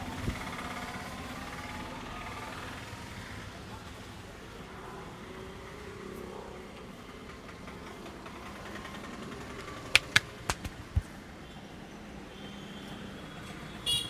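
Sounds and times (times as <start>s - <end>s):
street traffic hum: 0.0s - 14.0s
joints cracking: 9.6s - 11.1s.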